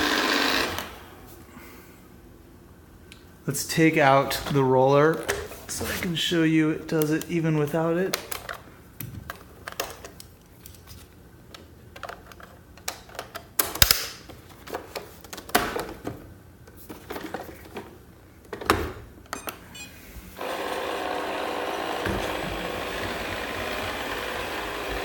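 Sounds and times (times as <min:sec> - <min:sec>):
robot vacuum whirring: 0:20.4 - 0:25.0.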